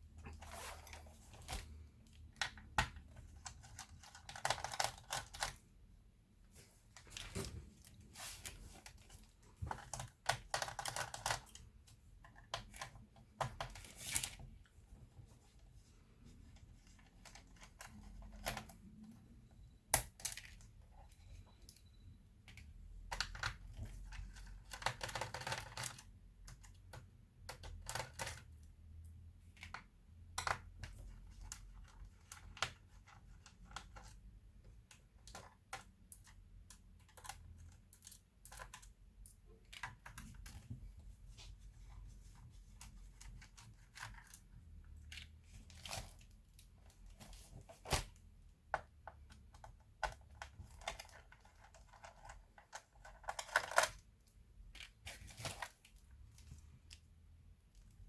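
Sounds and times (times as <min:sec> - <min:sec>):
clicks and taps of plastic parts: 0:22.4 - 0:28.6, 0:29.4 - 0:40.9.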